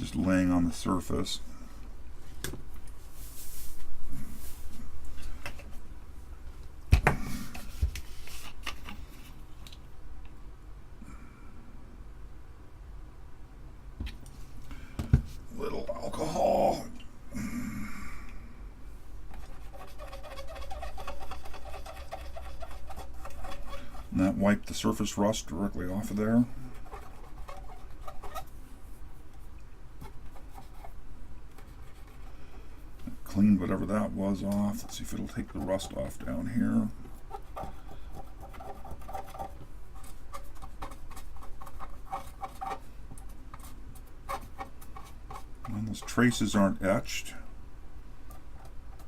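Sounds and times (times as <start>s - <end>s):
wipe rubbing on metal: 19.3s - 24.6s, 26.0s - 29.1s
scratchy scrubbing of circuit board: 19.3s - 25.1s, 25.7s - 28.6s, 30.0s - 31.0s, 33.6s - 42.9s, 43.5s - 46.8s.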